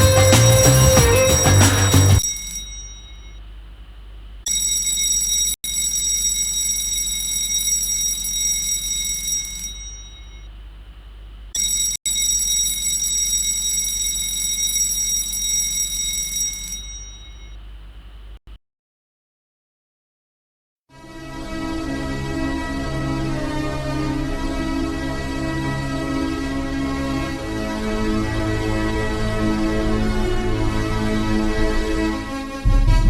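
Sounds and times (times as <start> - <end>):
fire alarm bell ringing: 0.0 - 3.4, 4.5 - 10.5, 11.6 - 17.6.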